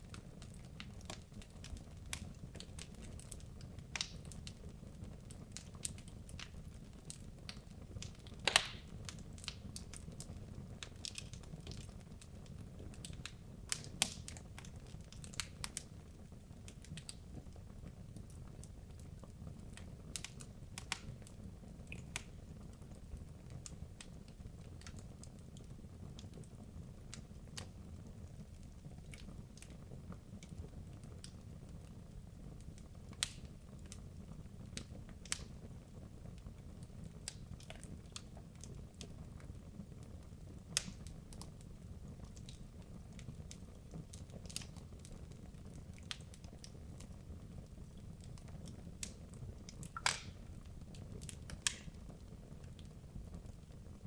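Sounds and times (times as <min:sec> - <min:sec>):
fire crackling and popping: 0:00.0 - 0:54.0
low rumble of flames: 0:00.0 - 0:54.0.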